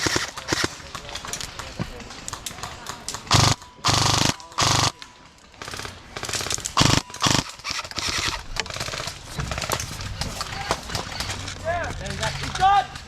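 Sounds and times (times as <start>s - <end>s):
airsoft rifle full-auto bursts: 0.0s - 0.7s, 3.3s - 5.0s, 5.6s - 9.7s.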